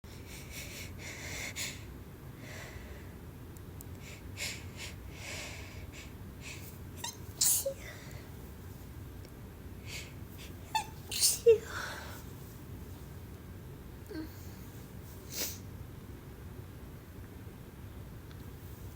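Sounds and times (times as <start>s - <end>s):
person sneezing loudly: 7.4s - 7.8s.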